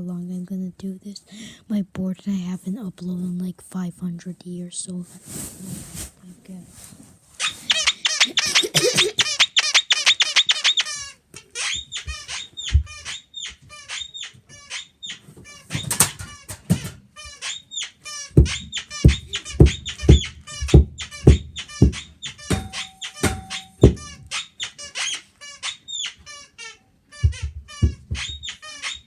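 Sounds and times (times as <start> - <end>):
guinea pig squeaking: 7.4 - 29.0
low thuds: 18.4 - 24.3.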